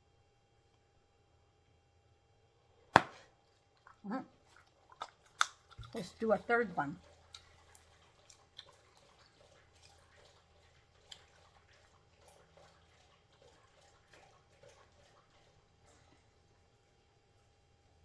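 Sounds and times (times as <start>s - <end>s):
low room hum: 0.0s - 18.0s
bubble gum chewing clicks: 4.9s - 6.0s.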